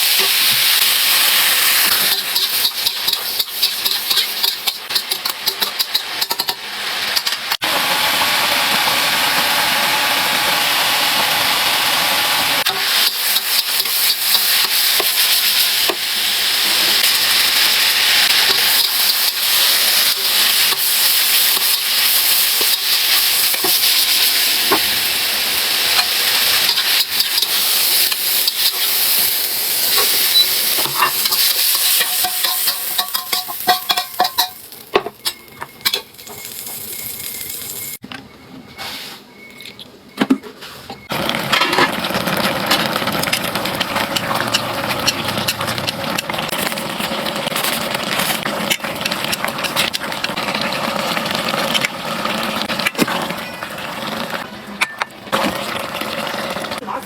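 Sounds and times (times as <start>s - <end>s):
food sizzling in hot oil: 0.0s - 38.0s, 41.1s - 56.9s
stirring clicks and scrapes: 1.9s - 6.6s, 42.6s - 50.4s.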